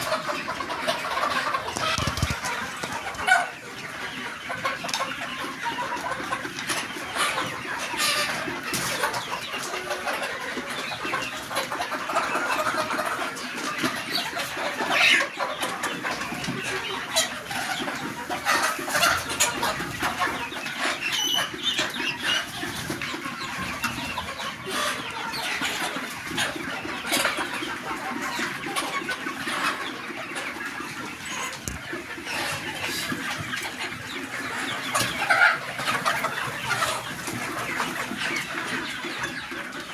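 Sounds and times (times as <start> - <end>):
chickens clucking: 0.0 - 39.9.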